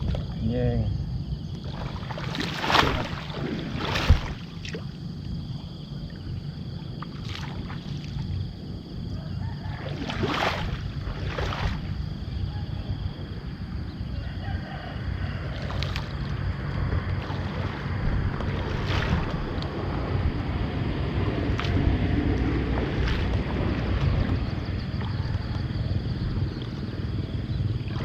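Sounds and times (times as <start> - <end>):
small boat engine rumble: 0.0 - 28.0
wind on microphone: 0.0 - 28.0
water splashes: 1.6 - 8.6, 9.6 - 12.1, 15.4 - 28.0.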